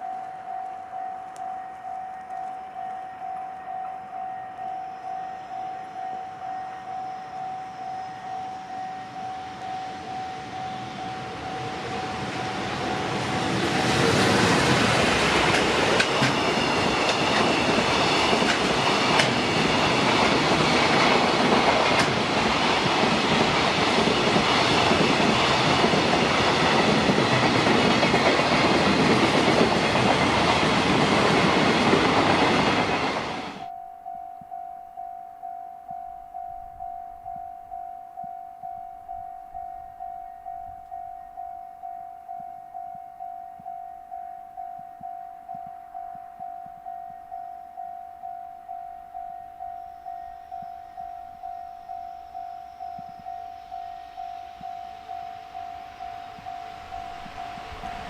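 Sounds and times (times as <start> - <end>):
level crossing bell ringing: 0.0 - 12.9, 32.4 - 58.0
train wheels clattering over rails: 10.8 - 33.7.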